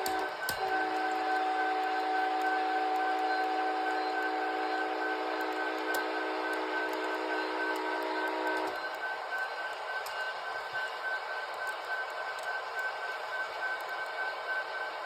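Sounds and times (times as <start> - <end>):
low train horn chord: 0.0 - 8.8.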